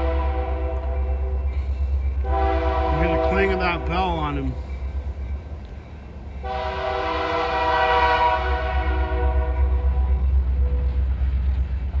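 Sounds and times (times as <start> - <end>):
locomotive air horn: 0.0 - 1.2, 2.2 - 4.1, 6.4 - 10.9.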